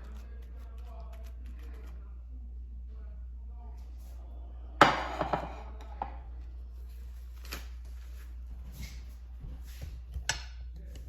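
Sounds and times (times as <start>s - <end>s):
steady low hum: 0.0s - 11.0s
kitchen clicks and knocks: 4.8s - 6.2s.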